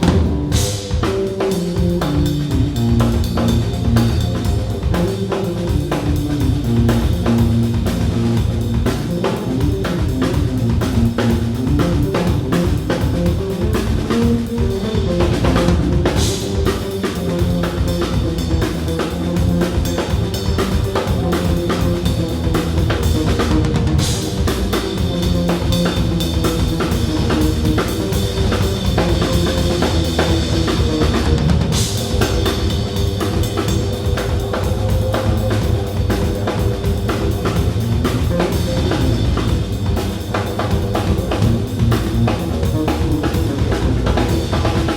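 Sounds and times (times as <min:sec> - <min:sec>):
live band playing: 0:00.0 - 0:44.9.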